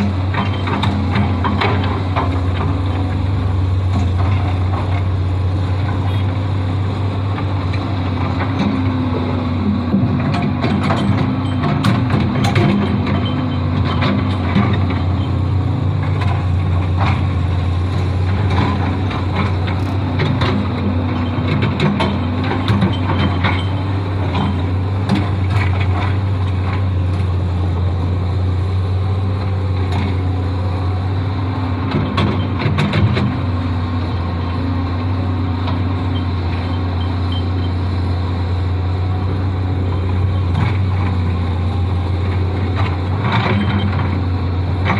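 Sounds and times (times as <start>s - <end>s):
excavator diesel engine running: 0.0s - 44.9s
metallic knocks and clanks: 9.9s - 15.4s, 18.2s - 26.8s.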